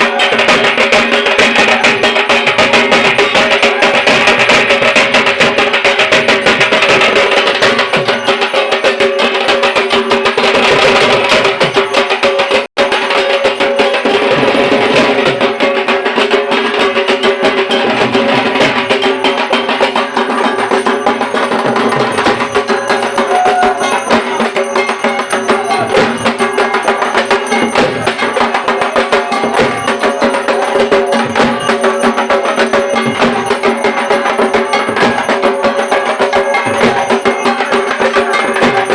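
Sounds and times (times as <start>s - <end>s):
barrel drum fast stick rhythm: 0.0s - 38.9s
steady ringing tones: 17.2s - 38.9s.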